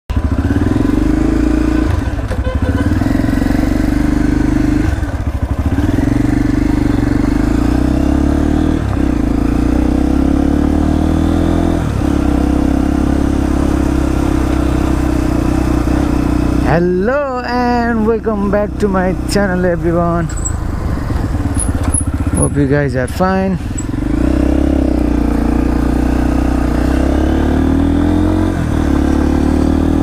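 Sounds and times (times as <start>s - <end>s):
motorcycle engine with gear changes: 0.1s - 30.0s.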